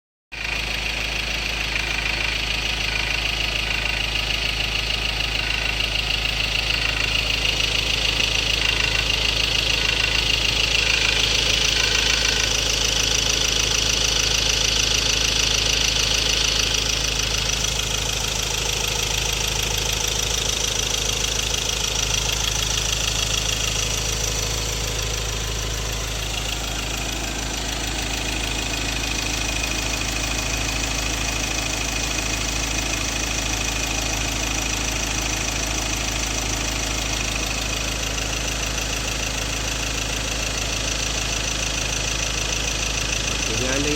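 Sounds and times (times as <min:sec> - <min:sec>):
diesel engine idling with knocking: 0:00.3 - 0:43.9.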